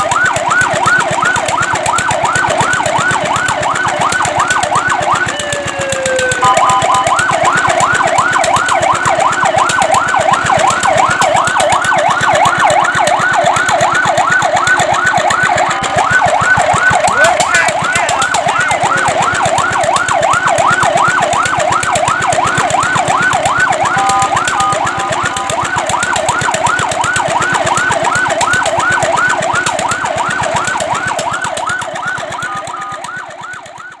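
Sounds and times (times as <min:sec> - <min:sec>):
fire truck siren yelping: 0:00.0 - 0:34.0.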